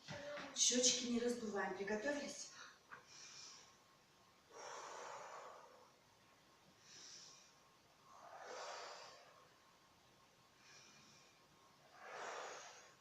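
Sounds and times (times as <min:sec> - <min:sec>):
faint deep breathing: 0:02.5 - 0:06.0, 0:06.7 - 0:09.7, 0:10.5 - 0:13.0.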